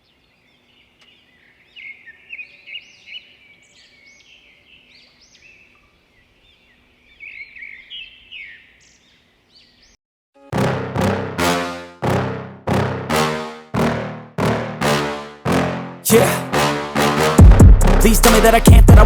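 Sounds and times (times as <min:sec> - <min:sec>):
songbirds chirping and singing: 0:00.0 - 0:10.0.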